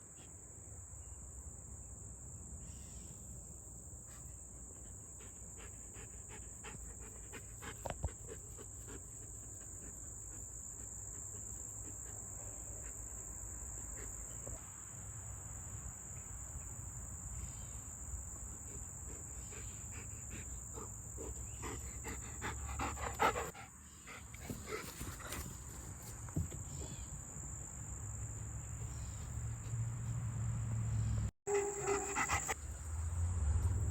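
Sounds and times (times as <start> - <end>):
insects chirping: 0.2 - 33.9
knocking and rustling: 24.4 - 27.0.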